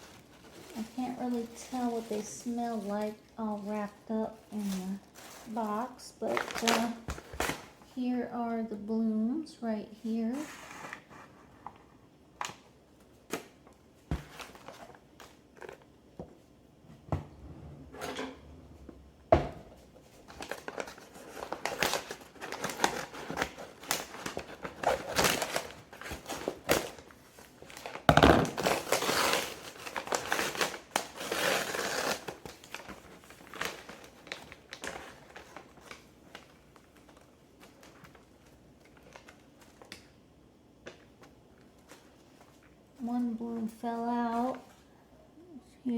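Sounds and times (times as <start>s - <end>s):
packaging wrap crinkling: 0.0s - 7.8s, 19.9s - 40.2s.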